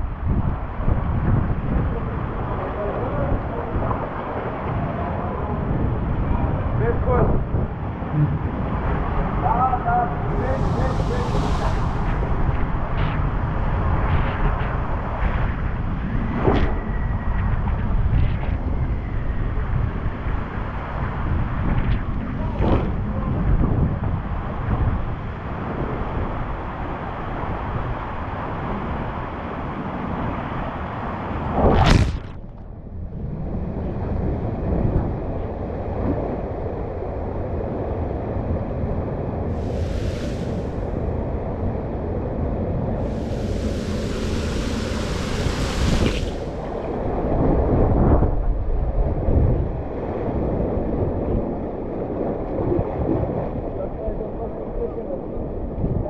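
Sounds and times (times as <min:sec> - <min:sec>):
wind buffeting microphone: 0:00.0 - 0:56.0
rushing water: 0:10.2 - 0:12.9, 0:39.6 - 0:41.0, 0:43.0 - 0:47.0
hiss of spray: 0:10.3 - 0:12.6, 0:39.5 - 0:41.0, 0:43.0 - 0:46.7
rubber tube sliding down flume: 0:10.3 - 0:13.2, 0:31.5 - 0:32.6, 0:39.5 - 0:41.0, 0:43.0 - 0:46.9
loud splash: 0:10.4 - 0:12.5, 0:31.6 - 0:32.5.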